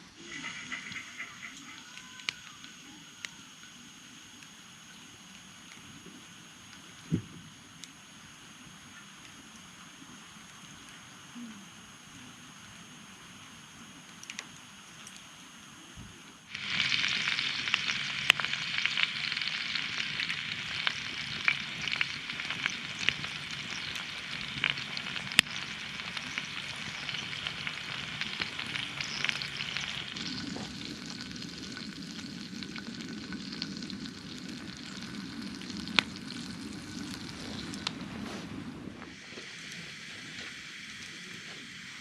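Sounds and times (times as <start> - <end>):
food sizzling in a skillet: 0.0 - 13.4, 16.5 - 42.0
deep rumble: 16.7 - 39.1.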